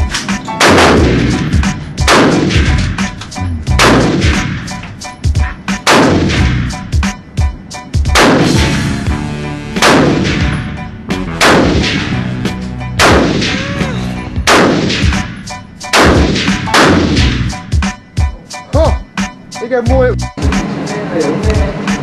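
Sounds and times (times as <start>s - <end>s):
rifle shots: 0.6s - 2.9s, 3.8s - 4.7s, 5.8s - 6.7s, 8.2s - 8.8s, 9.8s - 10.6s, 11.4s - 12.2s, 13.0s - 13.6s, 14.4s - 17.4s.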